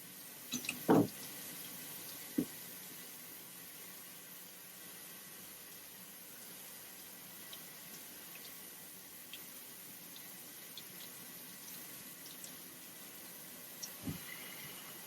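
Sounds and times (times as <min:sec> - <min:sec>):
shower water hissing: 0:00.0 - 0:15.0
water dripping: 0:00.4 - 0:02.6, 0:07.4 - 0:14.5.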